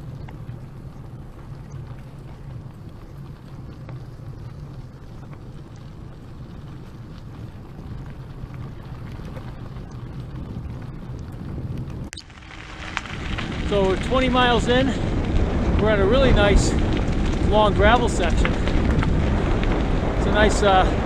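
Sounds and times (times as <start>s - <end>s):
bicycle tyres rolling on gravel: 0.0s - 21.0s
wind on microphone: 0.0s - 21.0s.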